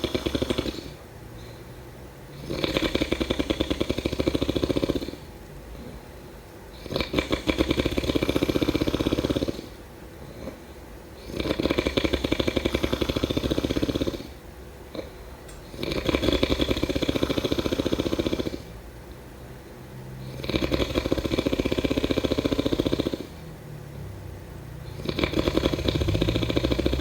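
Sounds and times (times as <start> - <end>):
person snoring: 0.0 - 1.5, 2.3 - 6.0, 6.8 - 10.6, 11.2 - 14.4, 15.7 - 18.8, 20.2 - 23.6, 24.8 - 27.0.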